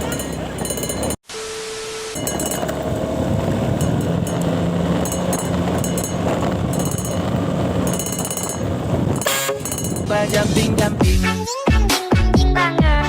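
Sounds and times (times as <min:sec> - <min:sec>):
vehicle engine hum: 0:00.0 - 0:11.5
street noise: 0:00.0 - 0:12.0.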